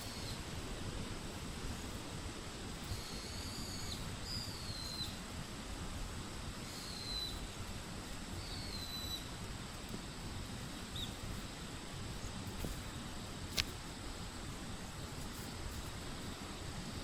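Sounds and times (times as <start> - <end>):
bird whistling call: 6.7 - 7.4
sharp click: 13.5 - 13.8.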